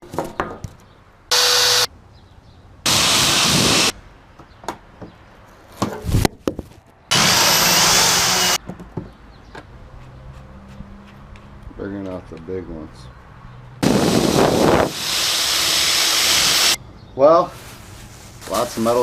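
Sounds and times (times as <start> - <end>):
power drill drilling metal: 1.3 - 1.9, 2.9 - 3.9, 7.1 - 8.6, 13.8 - 16.8.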